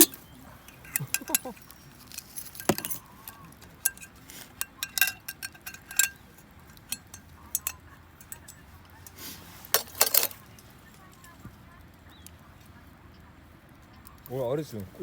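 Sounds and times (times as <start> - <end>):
cups and tableware clinking: 0.0 - 11.3.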